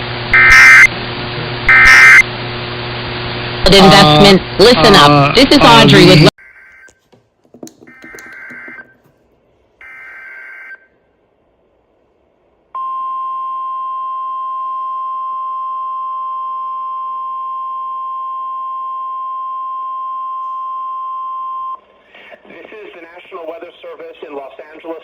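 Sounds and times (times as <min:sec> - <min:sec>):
steady warning alarm tone: 0:00.3 - 0:00.9, 0:01.7 - 0:02.2, 0:07.9 - 0:09.0, 0:09.8 - 0:10.9
digital alert data bursts: 0:01.7 - 0:02.2.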